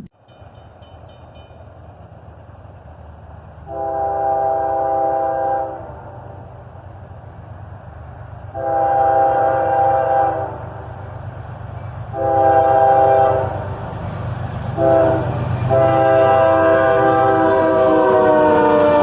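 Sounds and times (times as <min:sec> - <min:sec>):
low train rumble: 0:00.0 - 0:19.0
locomotive air horn blasts: 0:03.7 - 0:06.4, 0:08.5 - 0:10.9, 0:12.1 - 0:13.8, 0:14.8 - 0:19.0.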